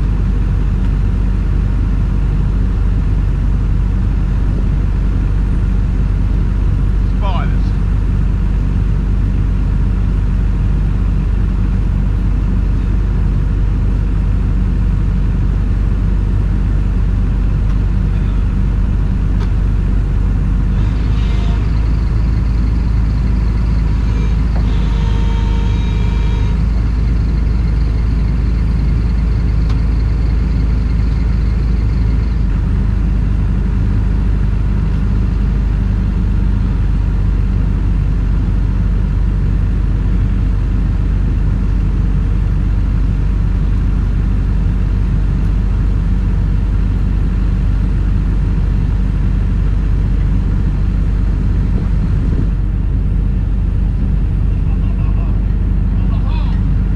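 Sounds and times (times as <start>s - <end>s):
diesel engine rumbling: 0.0s - 56.9s
high squeaks: 20.6s - 26.9s.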